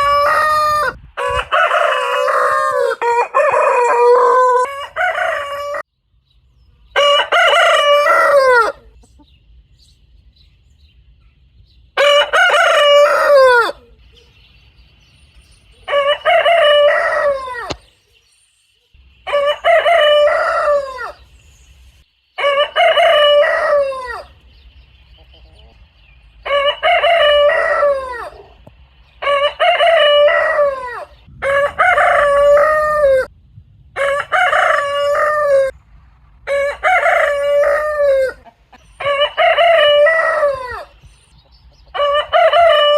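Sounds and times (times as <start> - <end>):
rooster crowing: 0.0 - 5.9, 6.9 - 9.0, 12.0 - 14.0, 15.8 - 17.8, 19.2 - 21.2, 22.4 - 24.4, 26.4 - 28.6, 29.2 - 33.3, 34.0 - 35.8, 36.4 - 41.0, 41.9 - 42.9.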